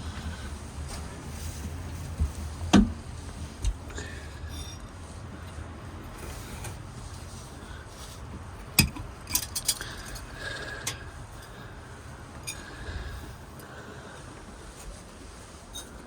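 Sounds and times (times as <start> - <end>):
sharp clinks and knocks: 8.8 - 10.3.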